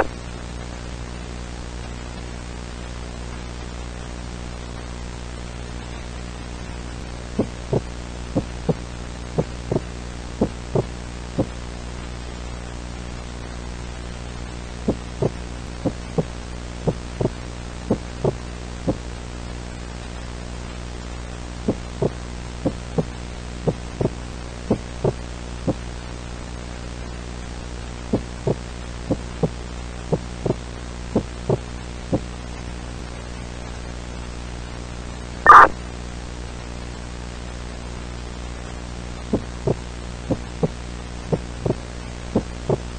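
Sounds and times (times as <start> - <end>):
low droning hum with hiss: 0.0 - 42.9
heartbeat-like throbs: 7.3 - 11.6, 14.9 - 19.0, 21.6 - 25.8, 28.1 - 32.3, 39.3 - 42.9.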